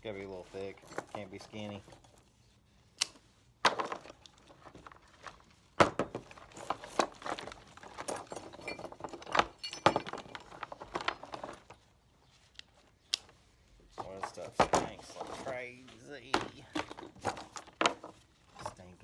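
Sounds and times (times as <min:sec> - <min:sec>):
scrap metal clinking and clanking: 0:00.5 - 0:02.2, 0:03.7 - 0:11.8.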